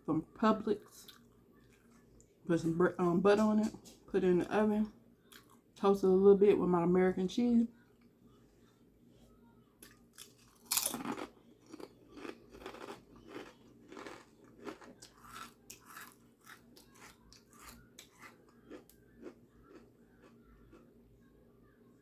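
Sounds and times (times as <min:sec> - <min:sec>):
crunchy chewing: 0:01.0 - 0:02.3, 0:09.8 - 0:20.9.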